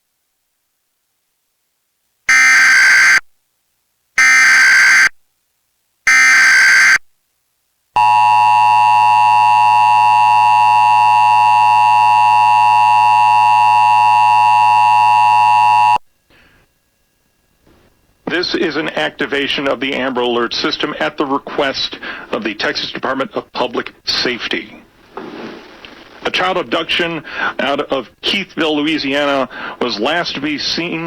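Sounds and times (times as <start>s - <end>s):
digital data screech bursts: 6.1s - 7.0s
two-tone attention signal: 8.0s - 16.0s.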